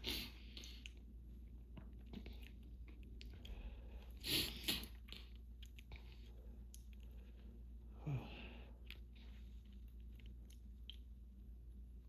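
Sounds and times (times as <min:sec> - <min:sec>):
person sniffling: 0:03.7 - 0:04.9
hard sniffs: 0:04.2 - 0:04.9.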